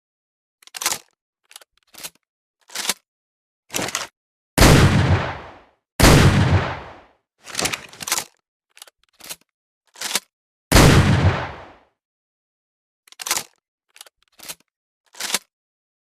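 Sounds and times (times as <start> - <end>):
gun clicks and clacks: 0.6 - 3.1, 3.7 - 11.8, 13.1 - 15.5
shotgun shots: 4.6 - 7.0, 10.7 - 11.8.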